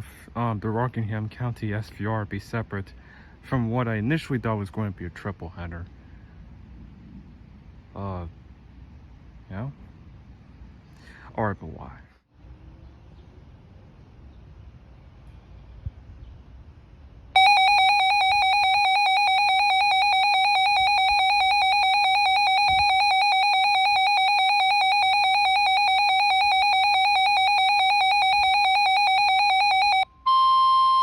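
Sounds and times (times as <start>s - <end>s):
steady warning alarm tone: 17.4s - 31.0s
warbling electronic alarm tone: 17.4s - 31.0s.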